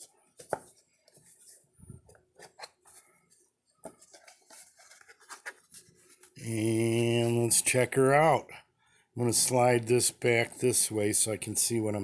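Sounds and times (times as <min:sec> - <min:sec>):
man talking: 0:06.4 - 0:08.6, 0:09.2 - 0:12.0.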